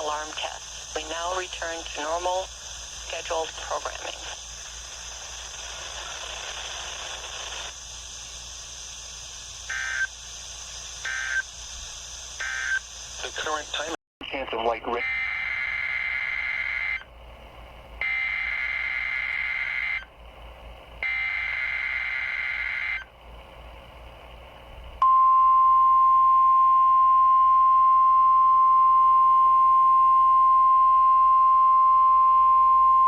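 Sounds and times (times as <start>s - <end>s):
radio hiss: 0.0s - 15.4s
steady alarm tone: 9.7s - 10.1s, 15.0s - 17.0s, 18.0s - 20.1s, 21.0s - 23.1s.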